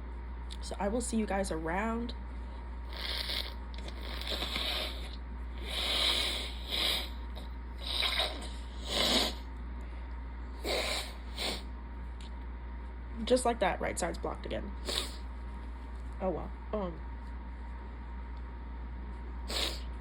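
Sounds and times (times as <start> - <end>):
person sniffing: 2.9 - 7.1, 10.6 - 11.7, 14.8 - 15.2, 19.5 - 19.9.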